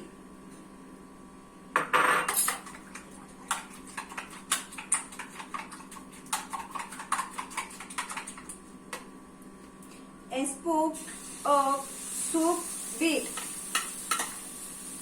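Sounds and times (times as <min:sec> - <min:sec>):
utensil clinking against dish: 0:01.8 - 0:08.5.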